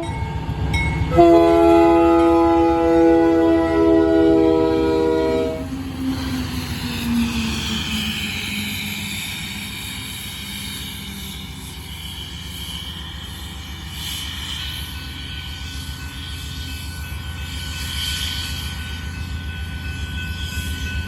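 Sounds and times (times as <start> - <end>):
locomotive air horn: 1.1 - 5.7.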